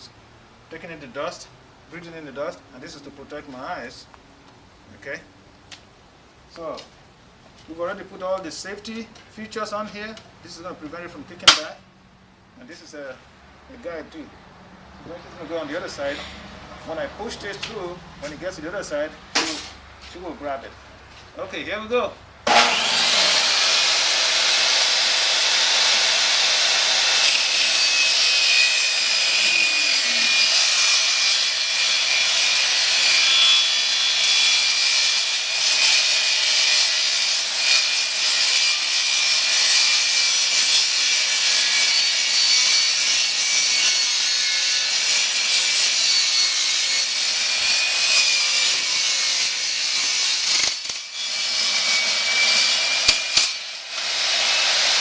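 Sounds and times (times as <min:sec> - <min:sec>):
table saw cutting wood: 0:22.5 - 0:55.0.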